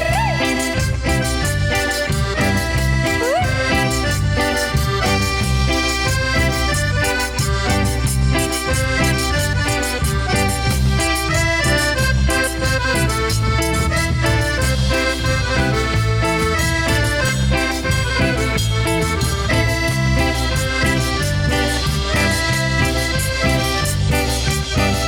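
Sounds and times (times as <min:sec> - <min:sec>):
accordion melody: 0:00.0 - 0:25.0
bass: 0:00.0 - 0:25.0
percussion beat: 0:00.0 - 0:25.0.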